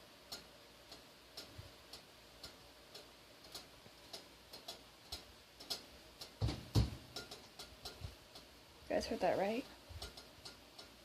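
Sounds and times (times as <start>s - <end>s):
stove ticking: 0.0s - 11.0s
dull deep knocks: 6.4s - 7.0s.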